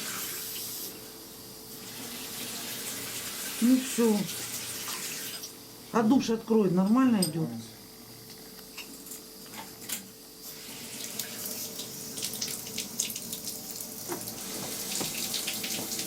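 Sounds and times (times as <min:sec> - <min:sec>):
water running from bath tap: 0:00.0 - 0:01.1, 0:01.7 - 0:05.7, 0:10.4 - 0:16.0.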